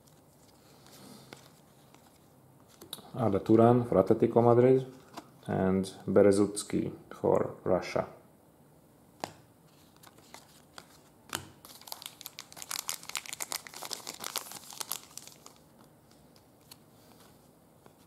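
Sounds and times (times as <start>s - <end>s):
wrapper crinkling: 11.6s - 16.8s.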